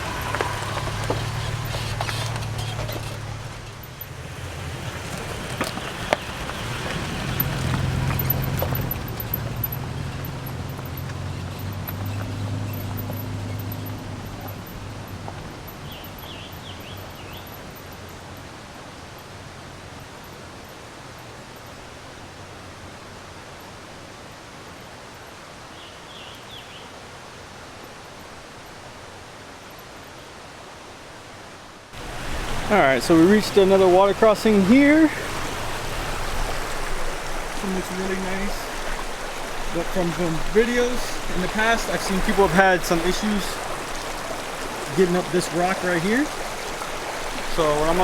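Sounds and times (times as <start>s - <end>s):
steady rushing noise: 0.0s - 9.8s, 30.6s - 48.0s
pickup truck engine running: 0.0s - 17.3s, 32.0s - 48.0s.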